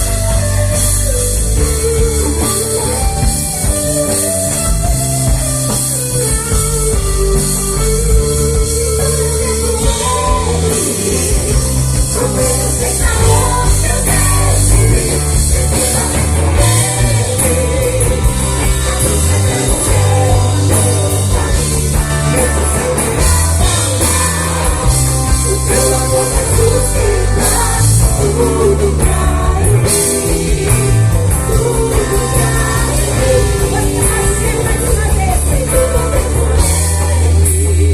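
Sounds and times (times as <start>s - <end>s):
worship band playing: 0.0s - 37.9s
person singing: 8.3s - 37.9s.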